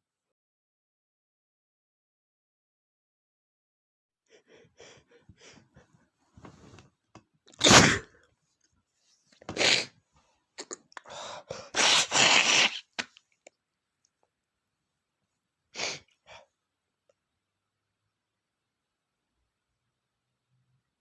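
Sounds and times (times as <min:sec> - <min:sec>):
man sneezing: 0:07.6 - 0:08.1, 0:11.7 - 0:12.9.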